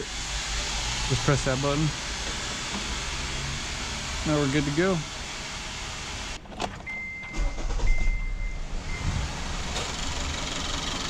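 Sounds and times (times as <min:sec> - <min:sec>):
ignition clicks: 0:06.4 - 0:09.0
high electronic beep: 0:06.9 - 0:09.2
car engine idling roughly: 0:07.4 - 0:11.0.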